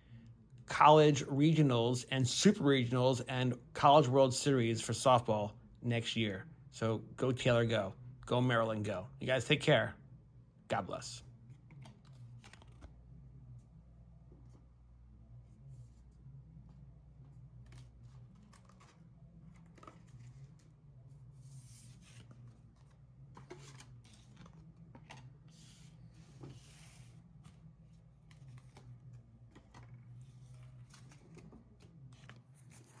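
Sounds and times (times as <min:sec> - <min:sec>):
low steady hum: 0:00.0 - 0:33.0
trading cards rustling and clicking: 0:11.5 - 0:13.0, 0:17.3 - 0:33.0.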